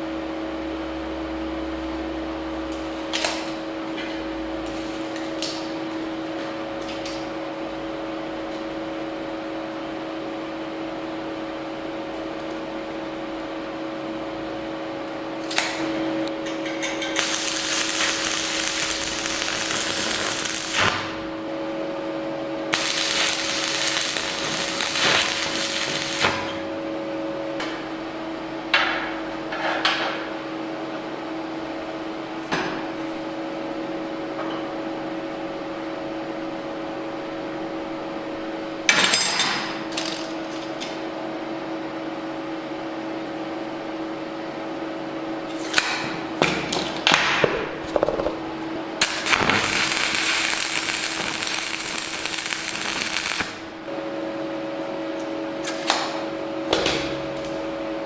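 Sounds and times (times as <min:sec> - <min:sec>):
machine hum: 0:00.0 - 0:29.6, 0:39.7 - 0:58.0
tools knocking and clicking: 0:16.4 - 0:17.2
hissing bursts: 0:22.8 - 0:26.3.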